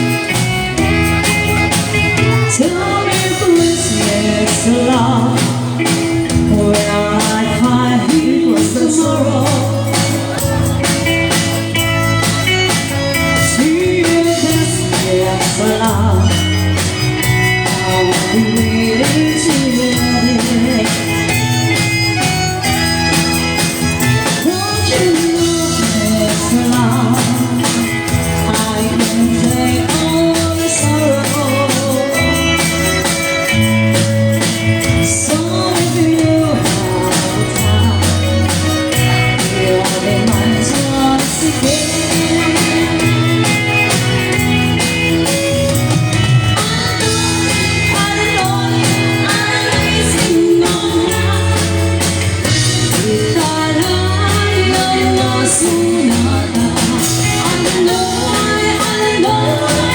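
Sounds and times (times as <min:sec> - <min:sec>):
live band dance music: 0:00.0 - 0:59.9.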